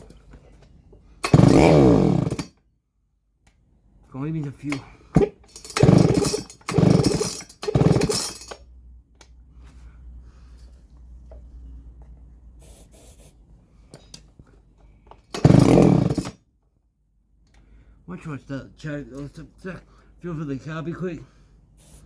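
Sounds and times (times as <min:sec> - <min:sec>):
engine turning over: 0:01.2 - 0:02.5, 0:04.7 - 0:08.7, 0:15.3 - 0:16.4
chainsaw starter cord pulls: 0:01.2 - 0:02.6, 0:04.5 - 0:08.6, 0:15.2 - 0:16.4.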